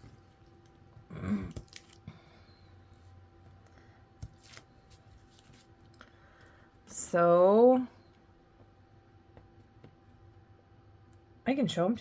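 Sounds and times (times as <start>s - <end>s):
paper card rustling: 4.2s - 6.0s.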